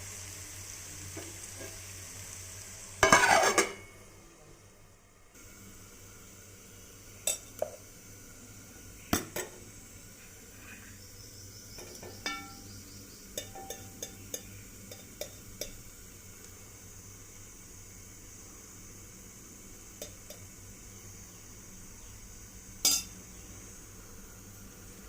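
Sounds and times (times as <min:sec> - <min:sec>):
potatoes sizzling: 0:00.0 - 0:25.0
metal utensil knocking on pan: 0:11.8 - 0:12.6, 0:13.4 - 0:15.8, 0:22.9 - 0:23.1.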